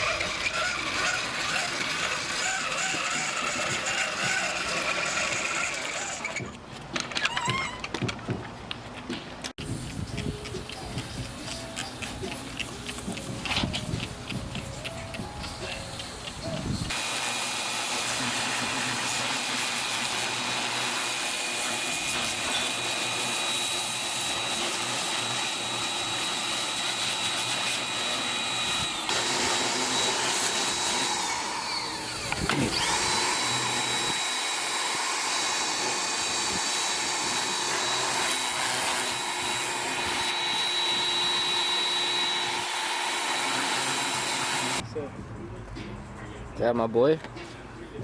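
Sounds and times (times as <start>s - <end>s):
pressure washer motor whine: 15.0s - 44.8s.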